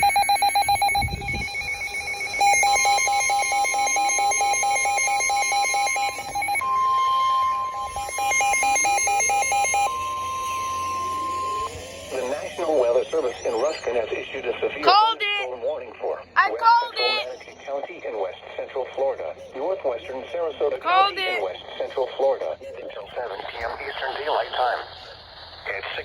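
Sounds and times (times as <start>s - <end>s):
steady high alert tone: 0.0s - 17.9s, 20.8s - 21.5s
fast-pulsing electronic beep: 0.0s - 22.6s.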